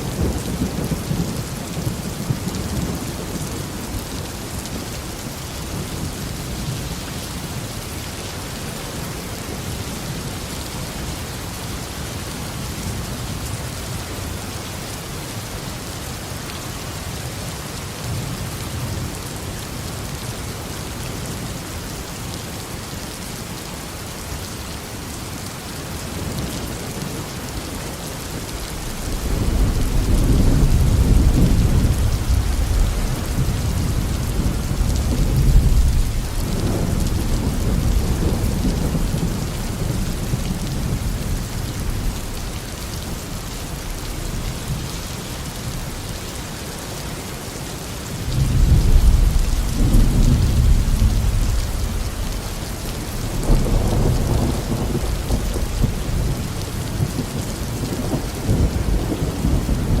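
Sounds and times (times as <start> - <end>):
heavy rain: 0.0 - 60.0
thunder rumbling: 28.3 - 42.4, 48.2 - 60.0.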